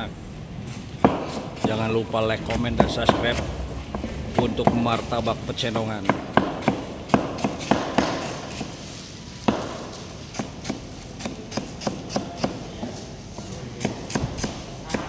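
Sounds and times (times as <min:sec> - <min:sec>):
sharp irregular knocks and taps: 0:01.0 - 0:01.8, 0:06.0 - 0:08.7.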